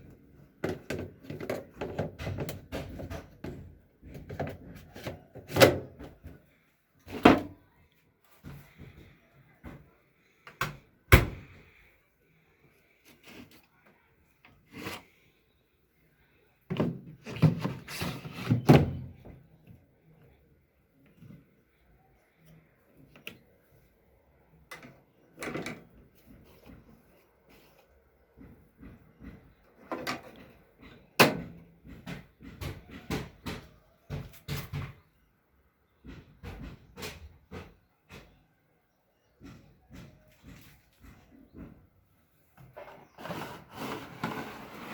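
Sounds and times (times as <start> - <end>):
parts knocking and scraping: 0.0 - 7.7, 12.8 - 19.8, 24.5 - 35.2, 39.2 - 44.9
hard parts knocking and clattering: 28.3 - 35.1.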